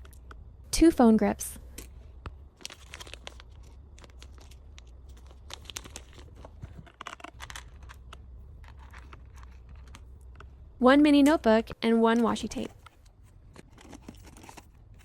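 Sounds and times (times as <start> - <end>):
plastic packaging crinkling: 2.6 - 10.0.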